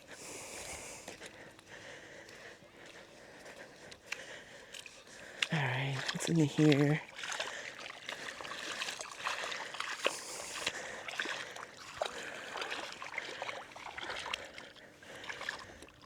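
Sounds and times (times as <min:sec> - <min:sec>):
water splashing and trickling: 0:03.8 - 0:16.0.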